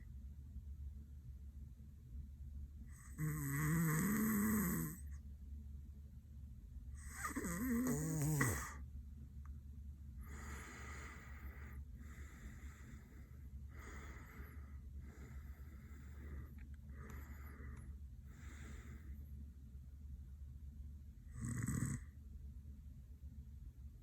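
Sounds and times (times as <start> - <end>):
man snoring: 3.0 - 5.0, 7.0 - 8.8, 10.3 - 13.0, 21.3 - 22.1
soft breaths: 10.2 - 19.8.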